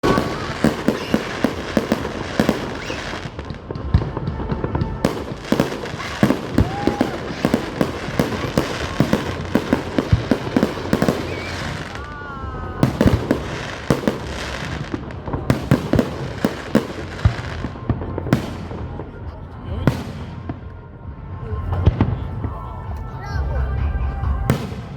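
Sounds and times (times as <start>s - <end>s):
whistling firework shells: 0.0s - 12.1s
fireworks bangs and crackling: 0.0s - 23.4s, 24.4s - 24.9s.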